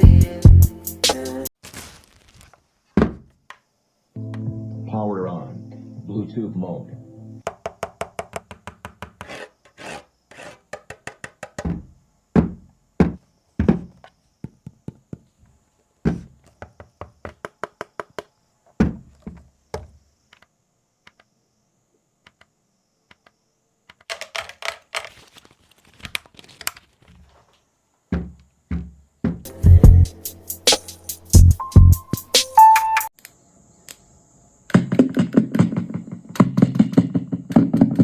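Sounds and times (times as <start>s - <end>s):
knocks and taps on hard surface: 7.4s - 9.3s, 10.7s - 15.3s, 16.1s - 19.9s
scratchy rubbing: 9.2s - 10.7s.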